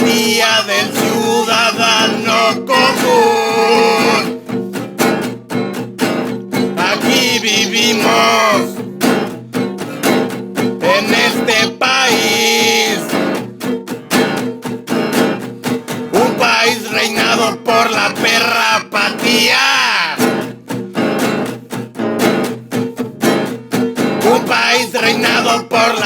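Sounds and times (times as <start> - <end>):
person singing: 0.0 - 4.6, 6.6 - 8.9, 10.6 - 13.4, 15.9 - 20.4, 24.1 - 26.0
acoustic guitar strumming: 0.0 - 26.0.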